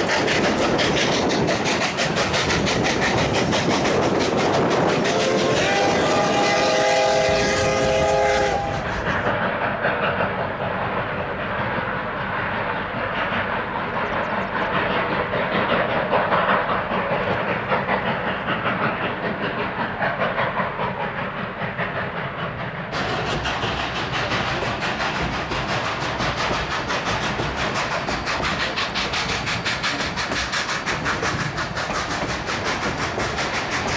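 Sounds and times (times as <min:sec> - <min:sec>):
train rhythmic clatter: 0:00.0 - 0:33.9
steam locomotive whistle blast: 0:05.0 - 0:09.0.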